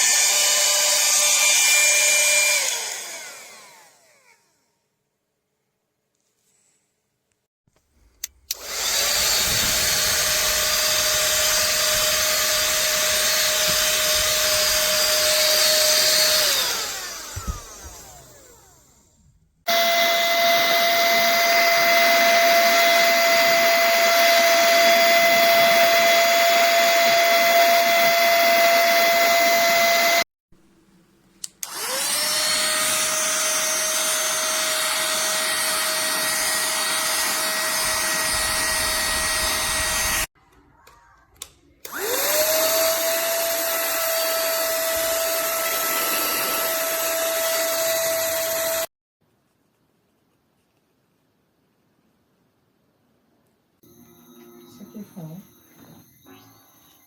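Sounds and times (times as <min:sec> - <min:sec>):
handheld vacuum motor whine: 0:00.0 - 0:04.9, 0:08.5 - 0:30.3, 0:31.6 - 0:40.4, 0:41.8 - 0:48.9.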